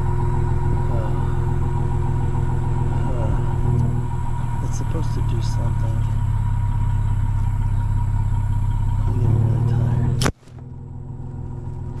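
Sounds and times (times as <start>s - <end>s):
quiet steady hum: 0.0s - 12.0s
vehicle exhaust idling: 0.0s - 12.0s
sharp click: 10.2s - 10.6s.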